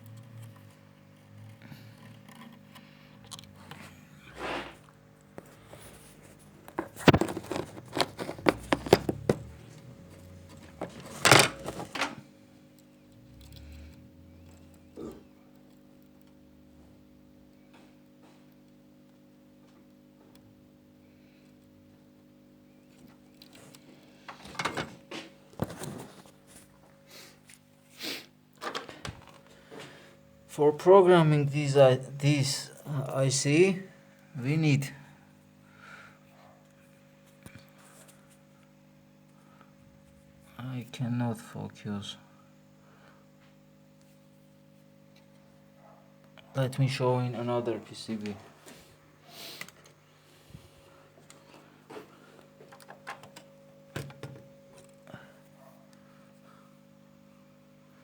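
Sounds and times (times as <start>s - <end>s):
faint electrical hum: 0.0s - 58.0s
objects knocking and clattering: 6.6s - 9.9s, 10.5s - 12.2s, 24.4s - 25.8s.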